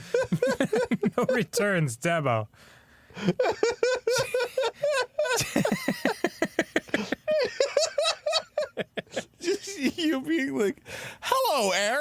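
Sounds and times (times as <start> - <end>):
people laughing hard: 0.0 - 1.5, 3.2 - 10.0.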